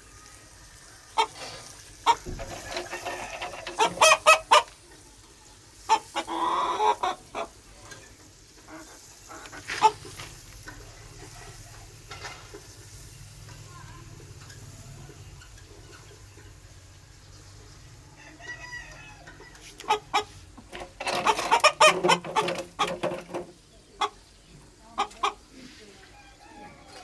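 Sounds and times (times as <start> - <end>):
rooster clucking and calling: 0.1 - 5.1, 5.8 - 7.6, 8.6 - 11.9, 18.1 - 27.0.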